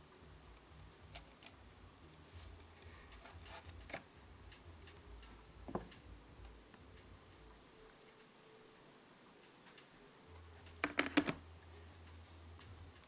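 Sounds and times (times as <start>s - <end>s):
faint clicks and taps: 0.1s - 8.4s, 9.2s - 13.0s.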